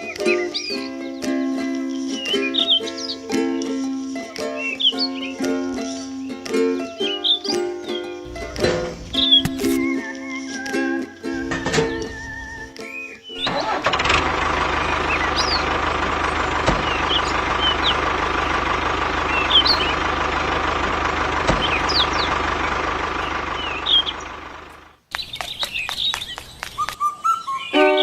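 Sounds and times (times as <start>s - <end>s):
birds chirping: 7.0s - 28.0s.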